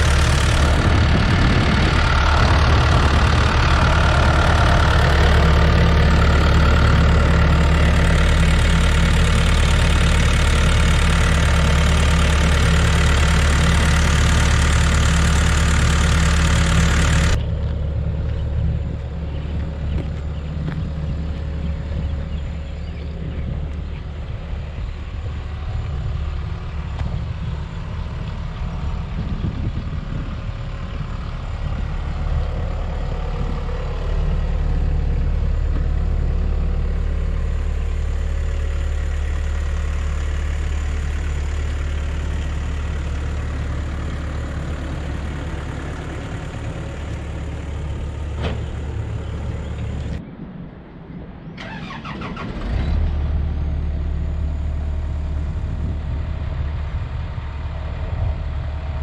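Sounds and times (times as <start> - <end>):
excavator diesel engine running: 0.0 - 50.3, 51.5 - 59.0.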